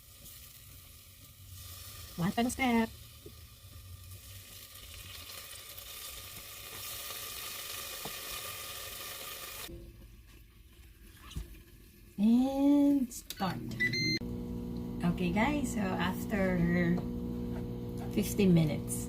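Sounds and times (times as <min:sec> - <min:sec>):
ribs sizzling in air fryer: 0:00.0 - 0:09.7.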